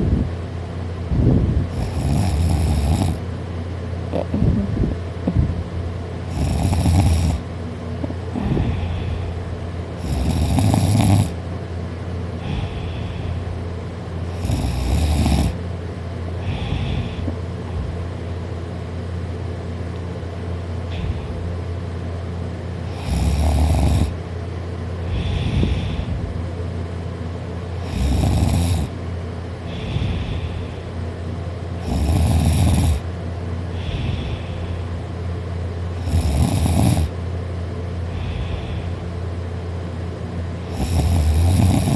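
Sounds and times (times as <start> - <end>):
person snoring loudly: 1.7 - 3.2, 6.3 - 7.5, 10.0 - 11.4, 12.4 - 13.3, 14.3 - 15.6, 16.4 - 17.3, 22.9 - 24.2, 25.1 - 26.1, 27.8 - 28.9, 29.7 - 30.8, 31.8 - 33.1, 33.8 - 34.6, 36.0 - 37.2, 40.7 - 41.9
soft breath: 8.3 - 9.5, 12.4 - 13.6, 16.4 - 17.5, 20.9 - 21.5, 25.0 - 26.3, 29.6 - 31.0, 33.7 - 35.1, 38.1 - 39.2.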